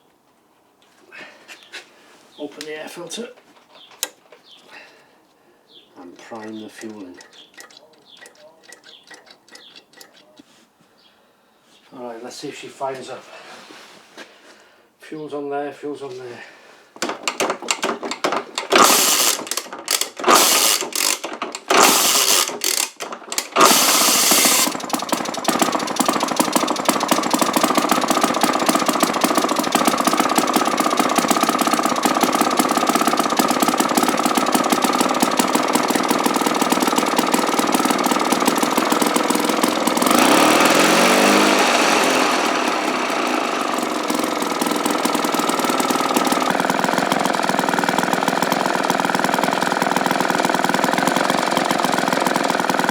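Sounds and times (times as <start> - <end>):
lawnmower engine sputtering and running: 6.0 - 10.2, 17.0 - 52.9.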